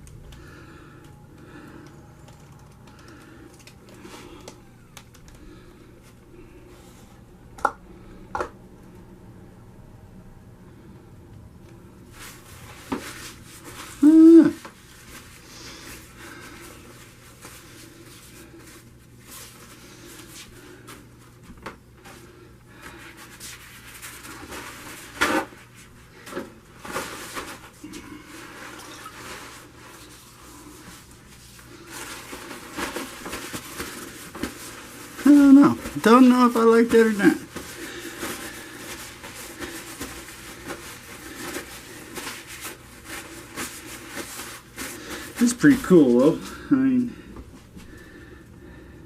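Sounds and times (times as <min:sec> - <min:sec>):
faint steady hum: 0:00.0 - 0:49.0
person humming: 0:14.0 - 0:14.7.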